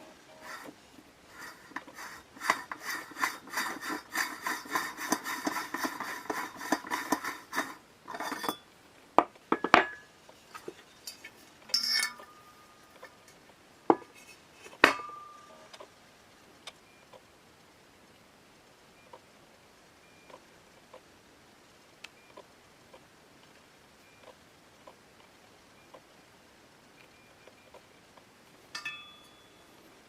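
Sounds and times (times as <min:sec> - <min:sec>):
small hard parts scraping and rattling: 0:00.0 - 0:08.6, 0:09.6 - 0:15.6
sharp metallic clinks: 0:11.1 - 0:12.8, 0:28.8 - 0:29.7.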